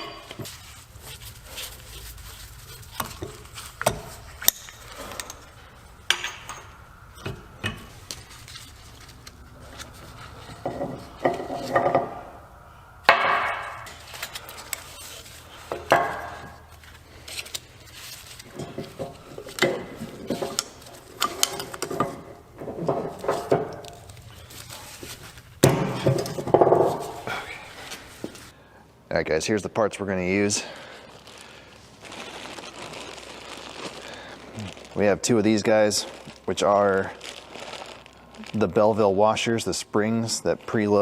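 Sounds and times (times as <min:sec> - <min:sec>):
steel parts clinking and clanking: 0:02.9 - 0:09.1, 0:13.1 - 0:15.1, 0:18.4 - 0:24.9.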